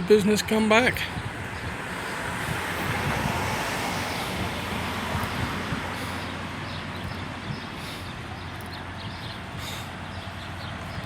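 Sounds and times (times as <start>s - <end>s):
passing road traffic: 0.0s - 11.0s.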